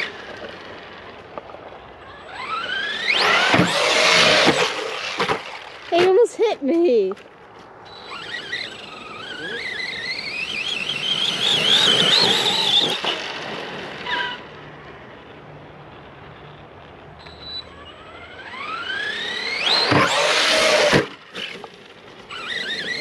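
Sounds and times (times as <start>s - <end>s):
electric motor whining: 2.0s - 6.1s, 7.9s - 14.6s, 17.2s - 23.0s.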